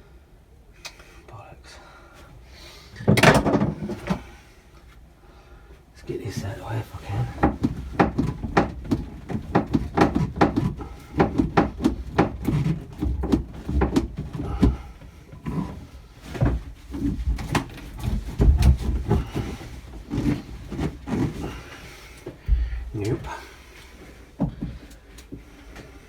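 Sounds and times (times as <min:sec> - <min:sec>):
plastic pipework knocking and rattling: 0:03.1 - 0:04.2, 0:06.4 - 0:21.7
heavy thumps: 0:06.4 - 0:26.0.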